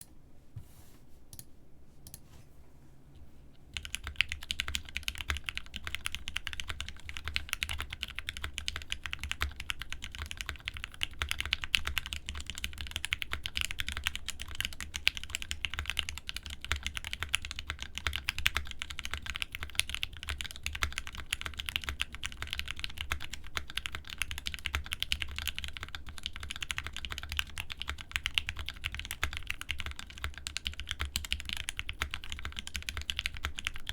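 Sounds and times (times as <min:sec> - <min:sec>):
fast mechanical keyboard typing: 0:03.8 - 0:33.9.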